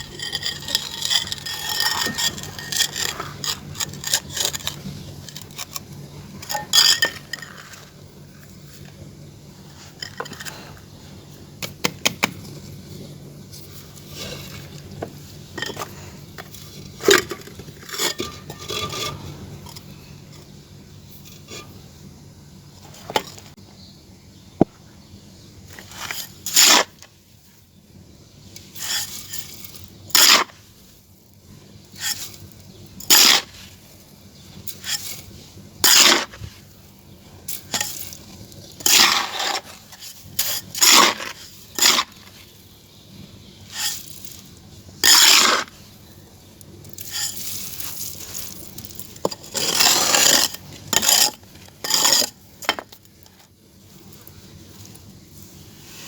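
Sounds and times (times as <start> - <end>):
clay pieces scraping and clinking: 0.0 - 7.9, 34.7 - 36.5, 37.5 - 42.5, 45.0 - 45.8, 46.9 - 53.4
loud single scraping strokes: 34.6 - 36.8, 37.5 - 42.6, 43.6 - 44.4, 46.9 - 53.0.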